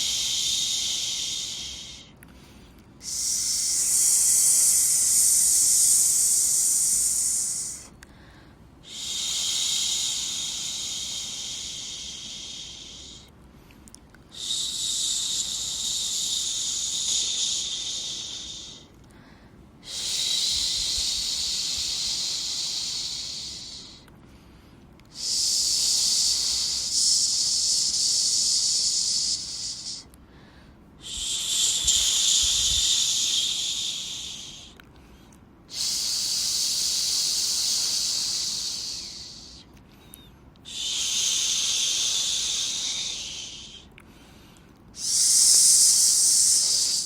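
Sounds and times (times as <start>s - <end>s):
person shushing: 3.0s - 7.9s, 45.0s - 47.0s.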